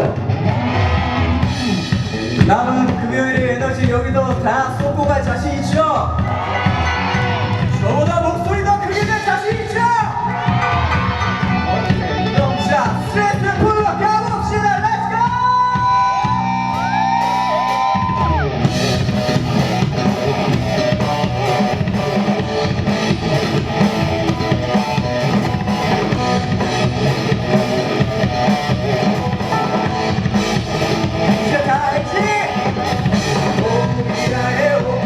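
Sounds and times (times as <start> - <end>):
electric guitar bending notes: 0.0 - 3.2, 9.0 - 14.0, 15.7 - 35.0
rock band playing: 0.0 - 35.0.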